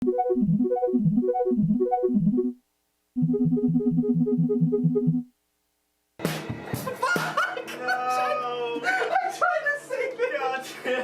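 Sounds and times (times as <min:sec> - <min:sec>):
synthesizer repeated notes: 0:00.0 - 0:02.6, 0:03.2 - 0:05.3.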